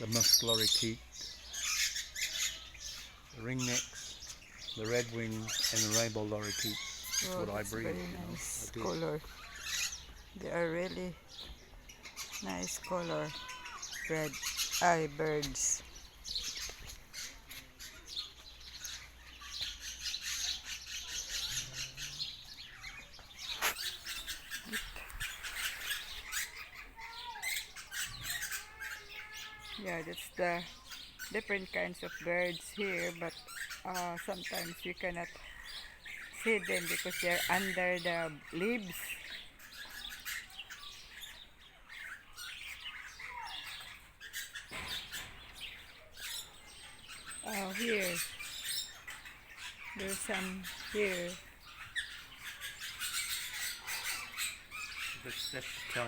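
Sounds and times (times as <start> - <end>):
parrots chirping and squawking: 0.0 - 56.0
loud parrot squawk: 23.8 - 29.8, 46.2 - 56.0.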